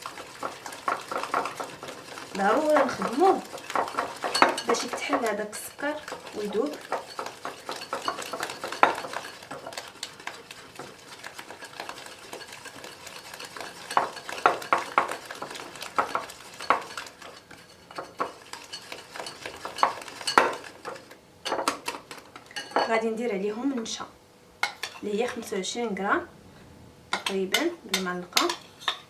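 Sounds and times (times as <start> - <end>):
whisk wires clicking against bowl: 0.0 - 22.8
whisk scraping in a bowl: 0.0 - 22.9.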